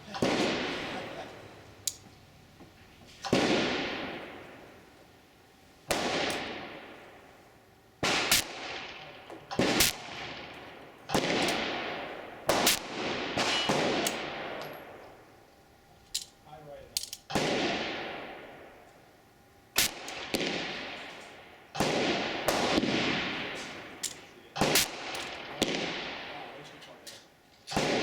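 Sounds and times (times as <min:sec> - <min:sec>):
revolver gunshots echoing: 0:00.1 - 0:01.2, 0:03.3 - 0:04.7, 0:05.9 - 0:07.3, 0:08.0 - 0:15.0, 0:17.3 - 0:18.8, 0:19.8 - 0:26.6, 0:27.7 - 0:28.0.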